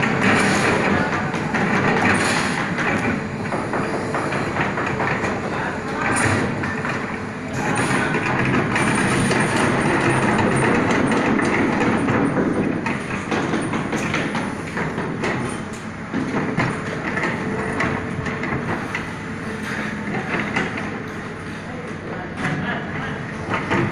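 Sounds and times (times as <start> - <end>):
metallic clattering and rattling: 0.0 - 18.8
excavator engine running: 0.0 - 23.9.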